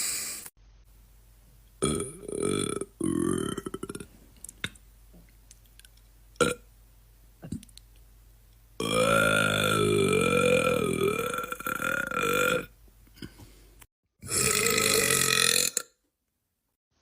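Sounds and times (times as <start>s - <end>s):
man belching: 1.8s - 4.1s, 6.4s - 6.6s, 8.8s - 12.7s, 14.2s - 15.9s.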